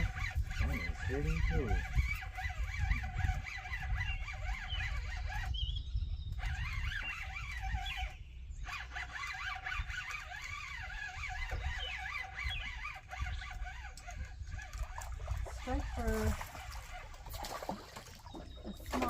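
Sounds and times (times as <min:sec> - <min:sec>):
high wavering animal calls: 0:00.0 - 0:19.0.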